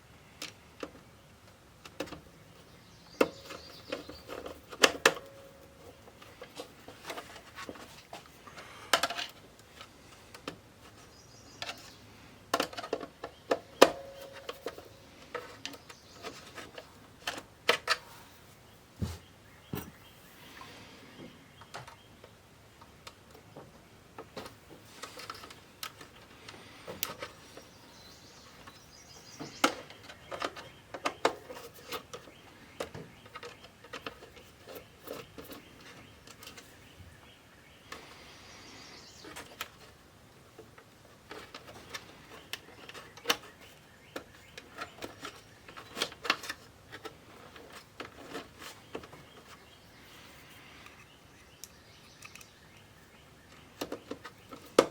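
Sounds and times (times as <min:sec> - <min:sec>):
small parts and tools clicking: 0:50.4 - 0:52.9.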